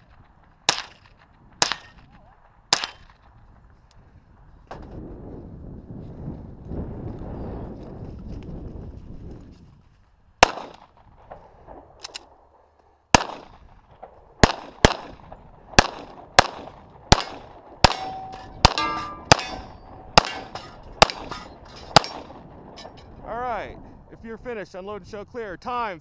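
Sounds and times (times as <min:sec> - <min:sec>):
gunshots: 0:00.0 - 0:03.2, 0:10.4 - 0:12.4, 0:13.1 - 0:22.4
steel targets ringing: 0:17.8 - 0:23.0.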